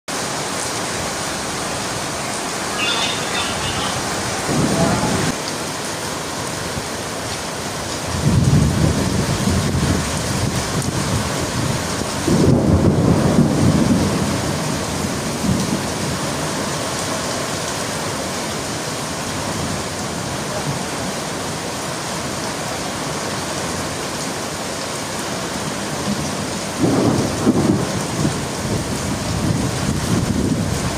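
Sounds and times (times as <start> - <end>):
heavy rain falling: 0.1 - 30.9
thunder rumbling: 2.7 - 5.4, 8.1 - 16.4, 26.1 - 30.9.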